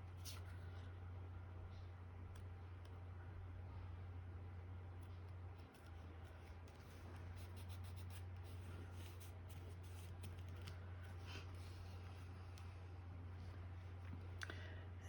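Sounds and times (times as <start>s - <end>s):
steady low hum: 0.0s - 15.0s
cardstock rustling and ticking: 5.1s - 12.8s.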